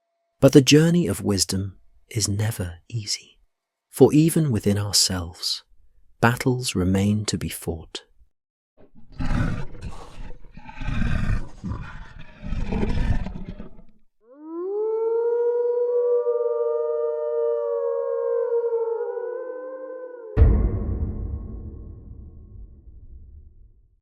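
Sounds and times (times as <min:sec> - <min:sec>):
wolf growling: 0:08.8 - 0:14.0
wolf howling: 0:09.1 - 0:20.4.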